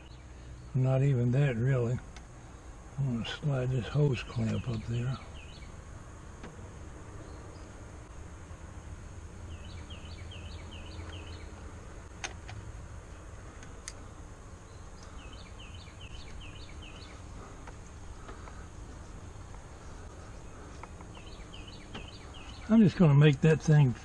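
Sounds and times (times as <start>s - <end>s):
high insect drone: 0.0s - 24.0s
low outdoor rumble: 0.0s - 24.0s
songbird singing: 0.0s - 24.0s
sharp clicks: 12.1s - 12.6s.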